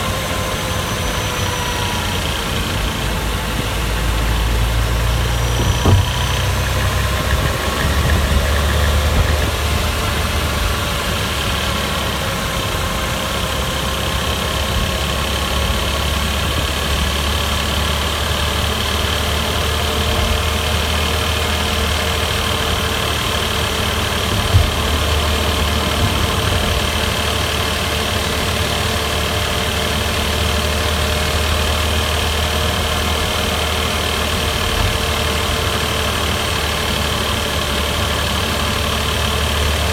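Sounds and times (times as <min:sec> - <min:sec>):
car engine running: 0:00.0 - 0:39.9
sharp knock: 0:05.6 - 0:06.4.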